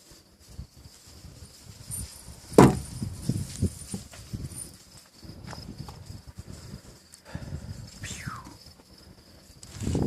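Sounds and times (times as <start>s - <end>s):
footsteps dull thuds: 2.4s - 7.2s.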